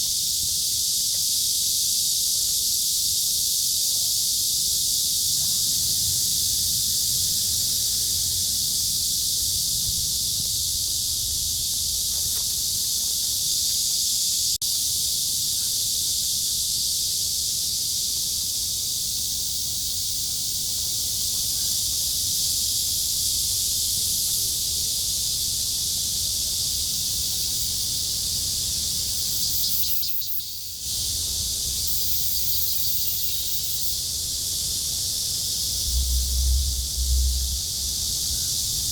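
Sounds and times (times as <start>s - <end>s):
cicada chorus drone: 0.0s - 38.9s
low rumble: 35.7s - 38.9s.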